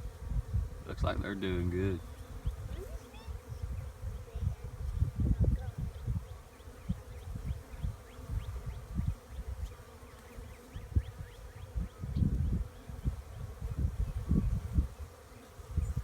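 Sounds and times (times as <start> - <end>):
low rumbling on microphone: 0.0 - 9.7, 10.8 - 15.0
honey bees buzzing: 0.0 - 16.0.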